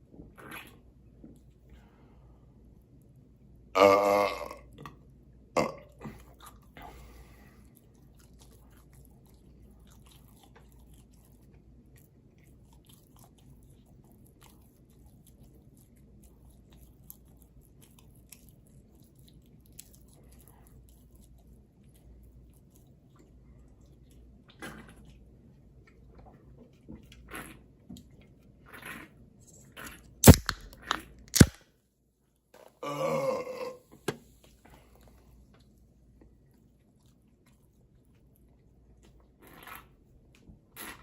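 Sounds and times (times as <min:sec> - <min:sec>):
person burping: 0:03.8 - 0:04.9, 0:05.6 - 0:06.2, 0:32.8 - 0:33.9.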